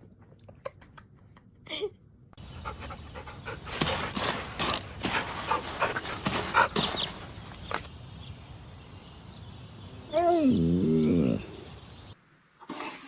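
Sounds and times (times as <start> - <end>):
dog panting: 2.4 - 7.4.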